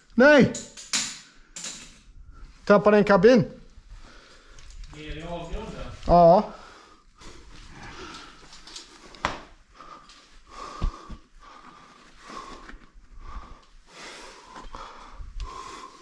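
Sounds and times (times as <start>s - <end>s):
person breathing hard: 3.9s - 4.8s, 6.5s - 16.0s.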